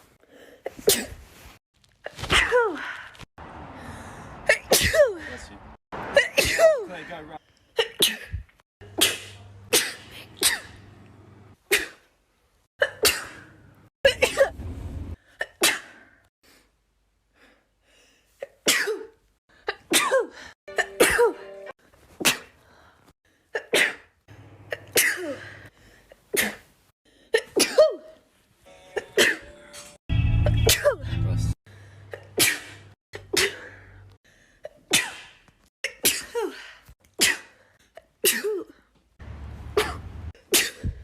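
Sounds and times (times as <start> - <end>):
person sneezing: 0.6 - 1.3, 9.0 - 10.7, 32.2 - 33.8.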